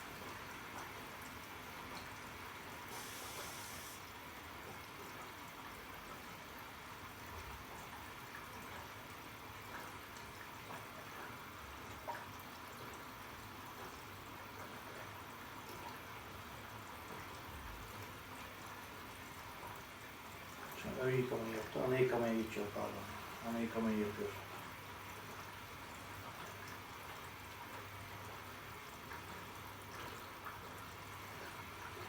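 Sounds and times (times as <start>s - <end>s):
water hissing through inlet: 2.8s - 4.2s.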